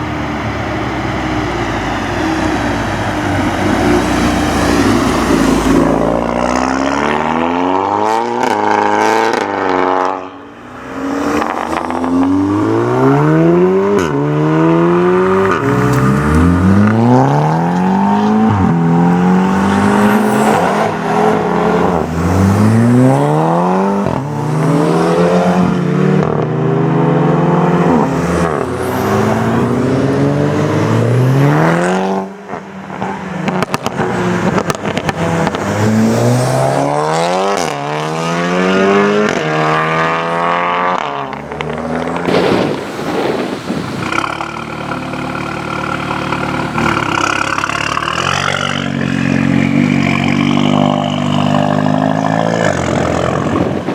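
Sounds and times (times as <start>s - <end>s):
car engine accelerating hard: 0.0s - 42.4s.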